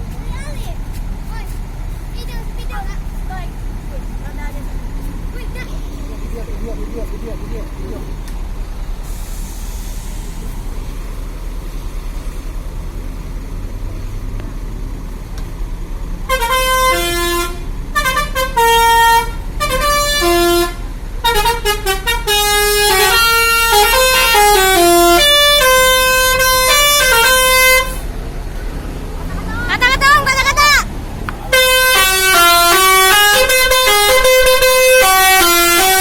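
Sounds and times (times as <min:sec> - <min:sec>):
steady low rumble: 0:00.0 - 0:12.8
bus musical horn tune: 0:16.2 - 0:28.1, 0:31.5 - 0:36.0.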